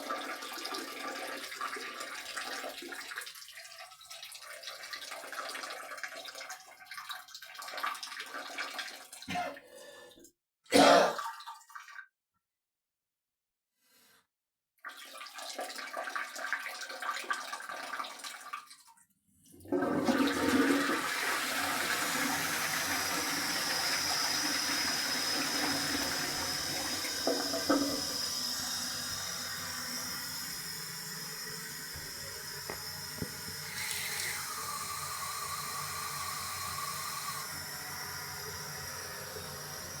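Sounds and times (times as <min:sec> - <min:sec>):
toilet flushing: 0:00.0 - 0:09.6, 0:14.9 - 0:18.6, 0:19.5 - 0:40.0
running water hiss: 0:21.9 - 0:40.0.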